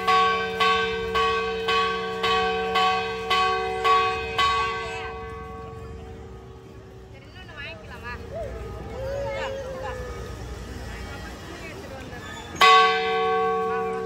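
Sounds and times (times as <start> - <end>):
church bell ringing: 0.0 - 6.6, 12.6 - 14.0.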